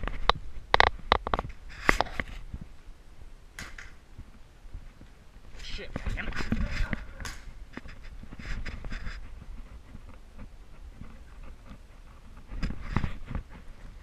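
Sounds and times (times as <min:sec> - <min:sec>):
footsteps on rough ground: 0:04.1 - 0:14.0
scuffle: 0:04.2 - 0:14.0.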